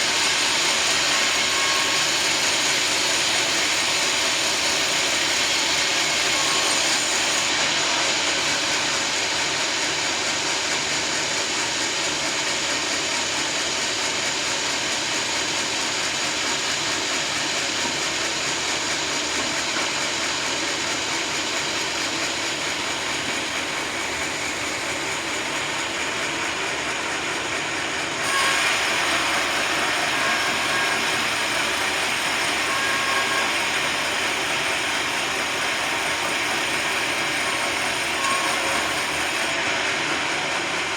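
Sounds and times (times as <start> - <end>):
sawmill machinery sawing log: 0.0 - 40.9.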